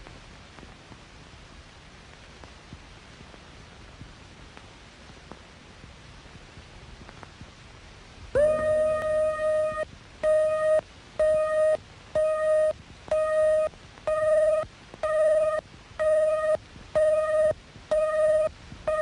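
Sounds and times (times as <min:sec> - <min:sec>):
electronic beeps: 0:08.4 - 0:19.0
steady electronic synth note: 0:08.4 - 0:19.0.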